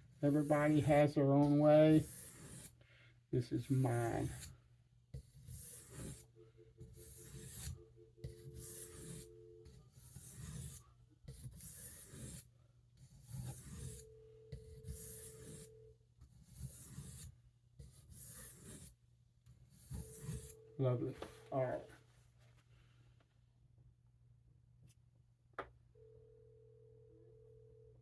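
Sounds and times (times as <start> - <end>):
knife blade scraping sharpening stone: 1.4 - 2.7, 5.3 - 6.2, 6.9 - 10.8, 13.3 - 14.1, 14.7 - 15.7, 16.5 - 17.3, 19.8 - 20.6.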